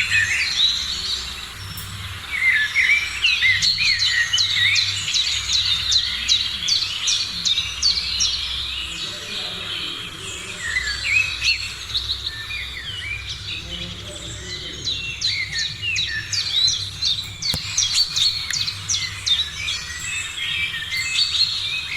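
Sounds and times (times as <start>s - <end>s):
birds chirping: 0.0s - 21.9s
sharp click: 17.4s - 18.7s.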